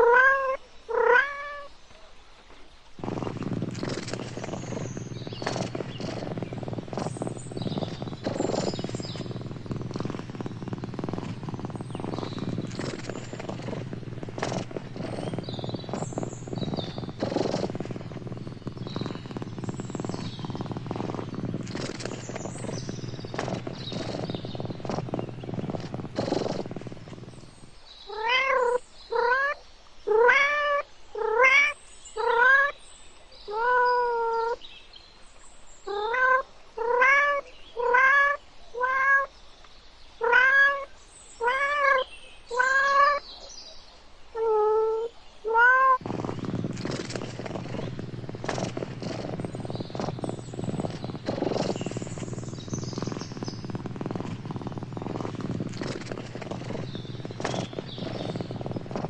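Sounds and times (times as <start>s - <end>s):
cat meowing: 0.0s - 1.7s, 28.1s - 32.7s, 33.5s - 34.6s, 35.9s - 39.3s, 40.2s - 43.2s, 44.4s - 46.0s
cat purring: 0.0s - 1.7s, 3.0s - 32.7s, 33.5s - 34.7s, 35.9s - 39.3s, 40.2s - 43.2s, 44.4s - 59.0s.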